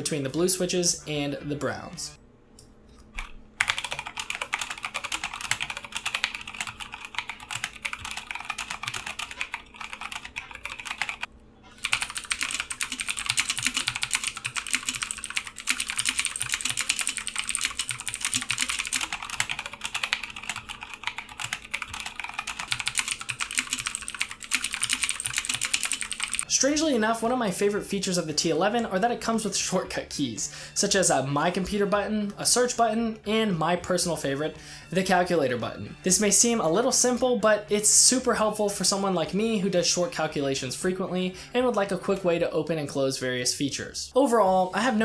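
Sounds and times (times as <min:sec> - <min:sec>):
typing on mechanical keyboards: 0:03.6 - 0:26.5.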